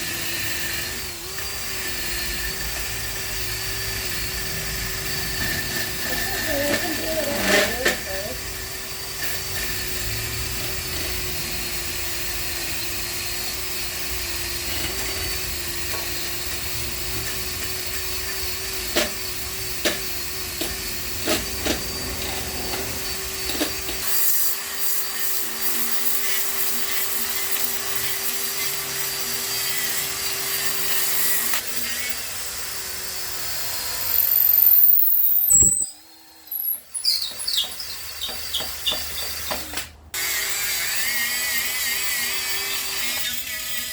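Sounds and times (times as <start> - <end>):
power sander on steel: 0.0 - 43.9.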